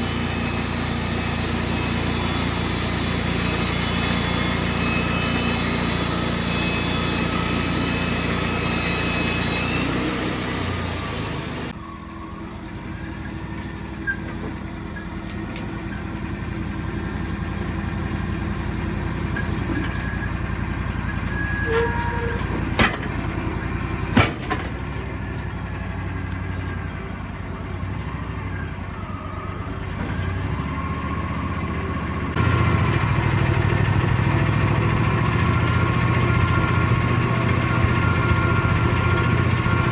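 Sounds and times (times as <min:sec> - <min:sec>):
whines: 0:00.0 - 0:15.1, 0:19.3 - 0:23.0, 0:27.8 - 0:39.9
sawmill engine running: 0:00.0 - 0:39.9.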